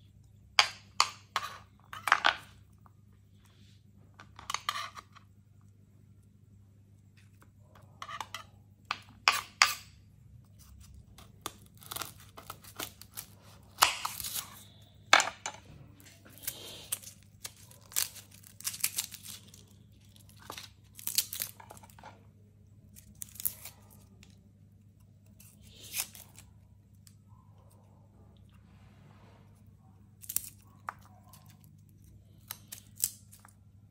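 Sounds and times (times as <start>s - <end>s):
dry tearing and crinkling: 10.6s - 14.8s, 16.0s - 22.2s, 22.8s - 24.4s, 25.2s - 27.0s, 30.2s - 33.7s.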